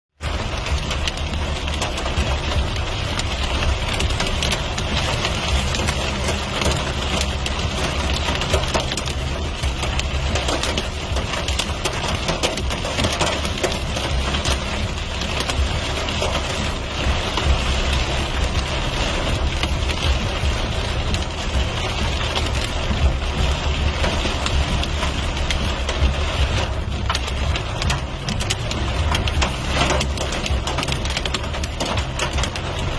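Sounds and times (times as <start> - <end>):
heavy rain pelting: 0.2 - 32.9
low rumble: 0.2 - 32.9.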